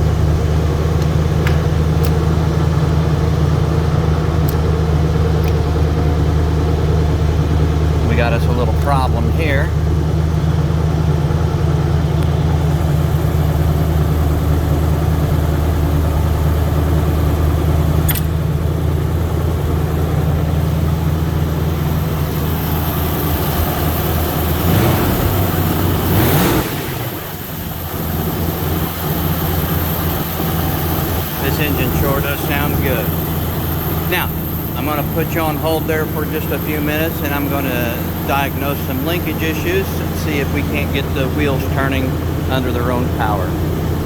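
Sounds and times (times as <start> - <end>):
car engine running: 0.0 - 44.0
engine revving: 0.0 - 44.0
sharp click: 18.1 - 18.4.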